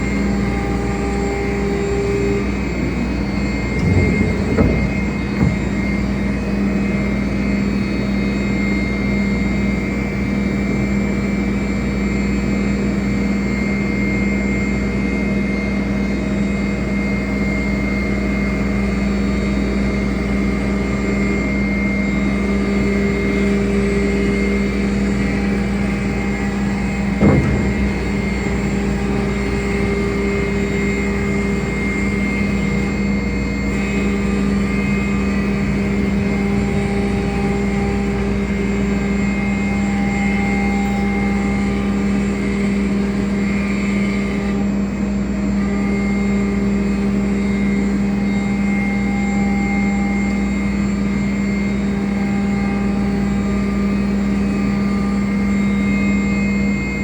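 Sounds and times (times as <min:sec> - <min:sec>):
router humming: 0:00.1 - 0:06.9, 0:24.0 - 0:44.6
sharp knock: 0:03.8 - 0:06.1, 0:27.2 - 0:30.2.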